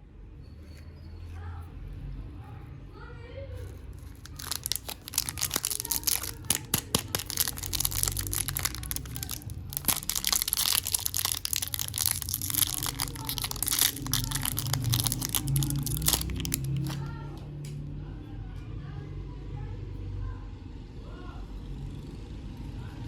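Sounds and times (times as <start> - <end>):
wrapper crinkling and tearing: 3.6 - 17.2.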